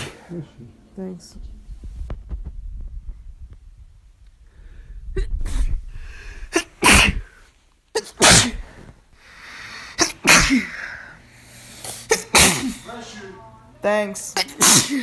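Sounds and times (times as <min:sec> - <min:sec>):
person sneezing: 0:06.5 - 0:08.8, 0:09.9 - 0:10.9, 0:11.8 - 0:13.0, 0:14.4 - 0:15.0.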